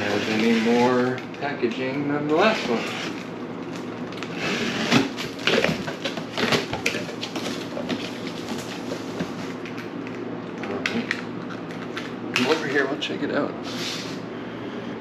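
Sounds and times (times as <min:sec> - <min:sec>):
cardboard rustling and scraping: 0:00.0 - 0:01.2, 0:02.3 - 0:03.3, 0:04.2 - 0:09.6.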